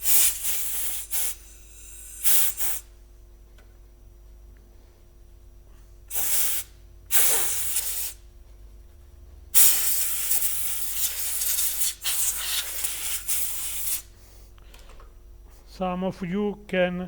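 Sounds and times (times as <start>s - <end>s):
compressed air hissing: 0.0s - 3.0s, 6.1s - 8.3s, 9.5s - 15.8s.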